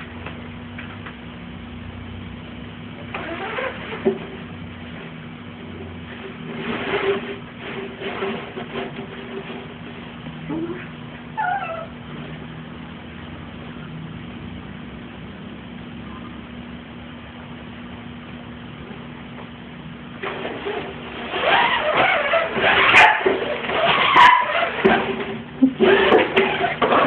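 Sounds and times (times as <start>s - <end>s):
steady low hum: 0.0s - 27.0s
puppy yelping: 11.4s - 12.0s.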